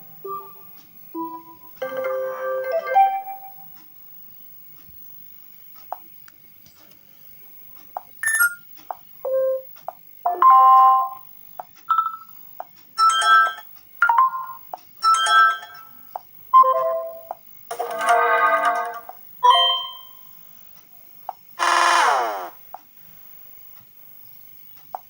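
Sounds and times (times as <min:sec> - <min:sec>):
smartphone ringtone melody: 0:08.2 - 0:08.6.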